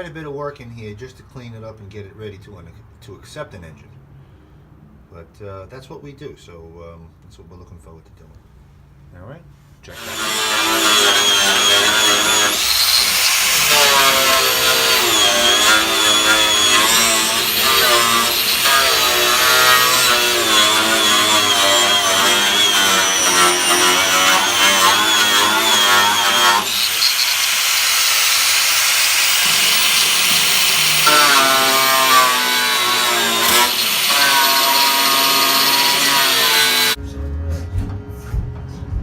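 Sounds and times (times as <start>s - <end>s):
power tool running: 9.9s - 37.0s.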